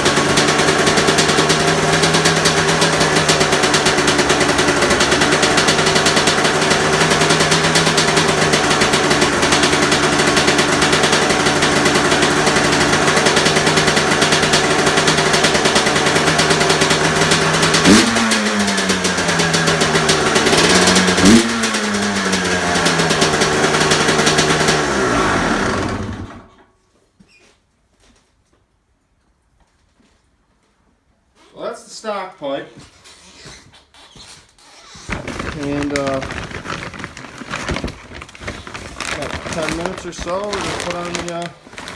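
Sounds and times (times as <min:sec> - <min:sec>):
two-stroke engine idling and revving: 0:00.0 - 0:26.6, 0:35.1 - 0:41.9.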